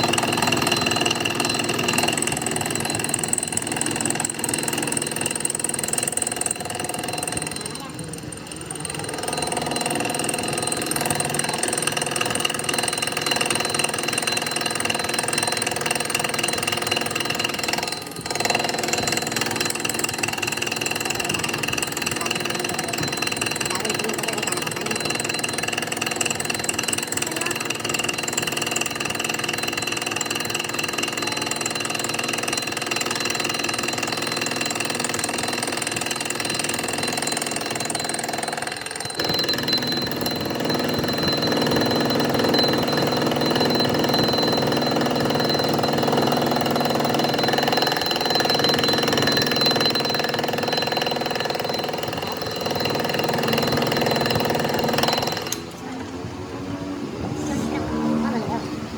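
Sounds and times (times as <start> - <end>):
machine tool whining: 0.0 - 58.9.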